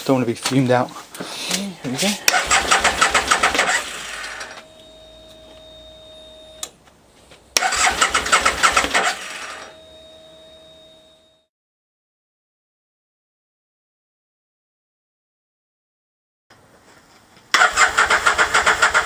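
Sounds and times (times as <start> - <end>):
motorcycle engine cranking: 2.3 - 4.6, 7.6 - 9.6, 17.5 - 19.0
faint steady whine: 3.1 - 7.4, 8.6 - 11.5
click: 6.6 - 6.8.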